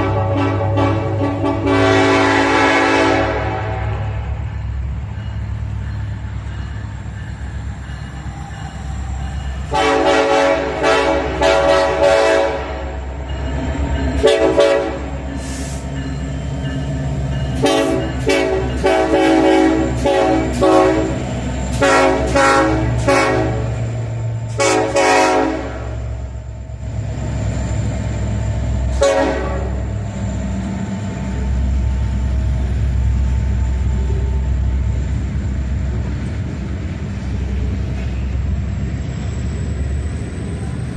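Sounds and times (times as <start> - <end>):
locomotive air horn blasts: 0.0 - 4.4, 9.7 - 13.0, 14.2 - 15.9, 17.6 - 21.2, 21.8 - 23.8, 24.5 - 26.1, 28.9 - 29.9
diesel engines rumbling: 0.0 - 40.9.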